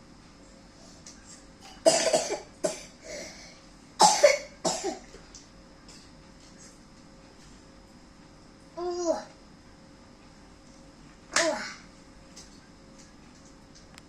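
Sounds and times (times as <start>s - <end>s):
person coughing: 1.7s - 3.4s, 4.0s - 5.0s.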